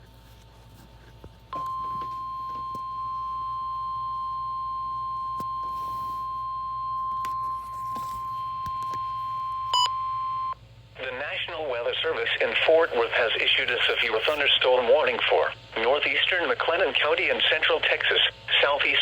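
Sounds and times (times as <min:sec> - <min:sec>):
steady alarm tone: 0:01.6 - 0:10.6.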